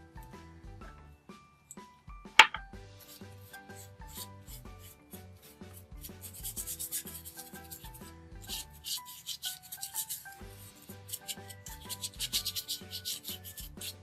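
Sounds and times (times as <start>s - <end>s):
soft background music with beat: 0.0s - 14.0s
paintbrush rubbing over cardboard: 3.0s - 14.0s.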